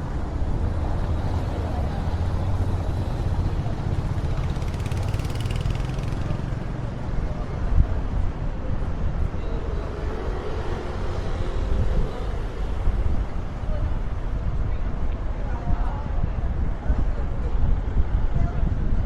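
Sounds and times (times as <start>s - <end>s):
low wind rumble: 0.0s - 19.0s
street traffic: 0.0s - 19.0s.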